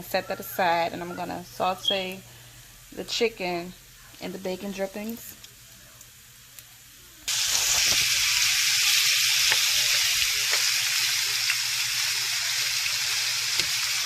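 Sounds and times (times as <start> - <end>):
chicken sizzling in a frying pan: 0.0 - 14.0.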